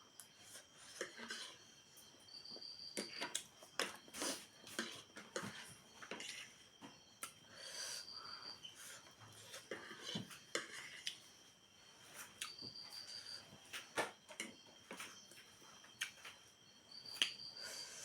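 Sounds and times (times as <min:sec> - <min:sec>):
breathing: 0:07.4 - 0:10.1, 0:17.5 - 0:18.0.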